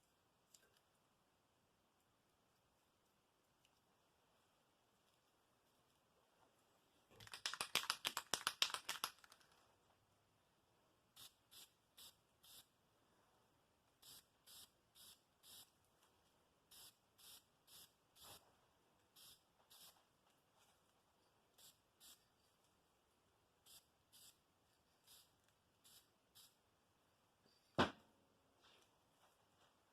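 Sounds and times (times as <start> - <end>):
spray can ball rattling: 7.2 - 9.4
spray paint hissing: 11.2 - 12.7, 14.0 - 15.7, 16.7 - 18.4, 19.1 - 20.0, 21.6 - 22.2, 23.6 - 24.4, 25.0 - 26.6.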